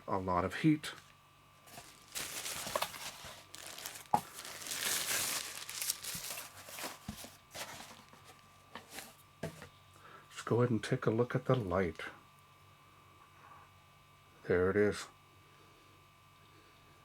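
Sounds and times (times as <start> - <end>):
packaging crinkling and rustling: 1.7 - 9.6.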